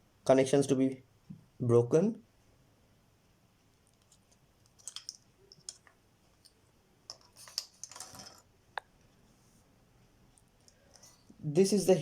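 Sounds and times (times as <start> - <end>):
plastic parts clicking and clattering: 3.9 - 8.5.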